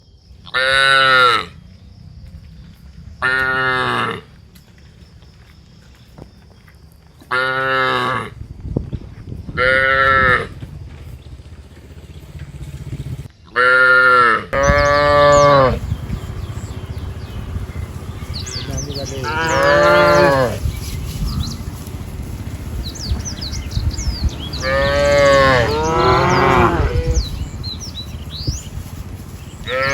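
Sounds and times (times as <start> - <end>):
cattle mooing: 13.6 - 15.9, 16.5 - 20.6, 24.3 - 27.6, 29.6 - 29.9
faint birds chirping: 14.6 - 29.9.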